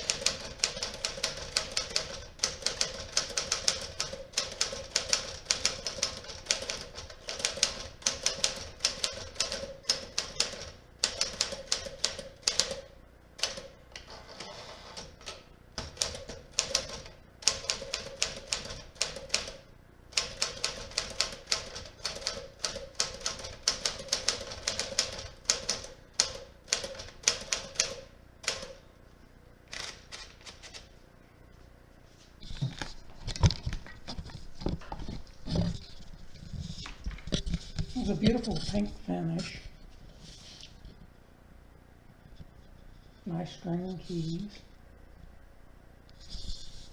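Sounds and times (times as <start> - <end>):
typewriter keystroke clacks: 0.0 - 13.7, 15.8 - 19.6, 20.2 - 28.8.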